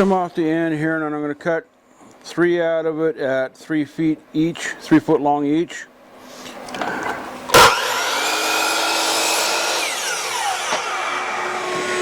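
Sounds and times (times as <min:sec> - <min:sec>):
power saw cutting wood: 0:07.5 - 0:12.0.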